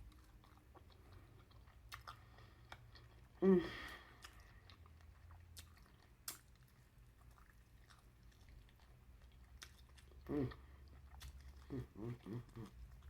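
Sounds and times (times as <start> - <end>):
person chewing: 0.0 - 13.0
wet mouth clicks: 5.6 - 6.5.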